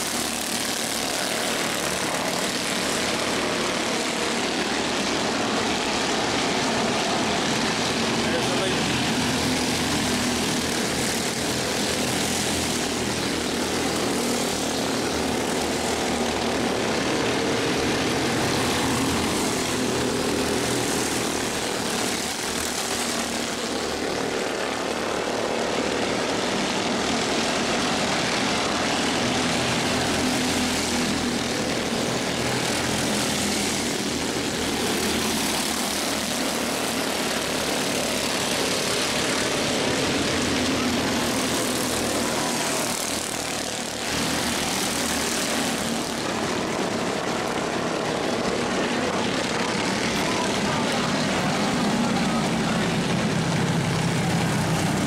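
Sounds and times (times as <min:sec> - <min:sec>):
race cars passing at speed: 0:00.0 - 0:55.0.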